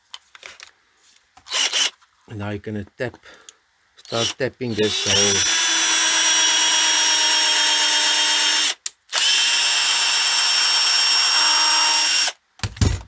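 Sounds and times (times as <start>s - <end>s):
electric drill whining: 4.1s - 12.4s.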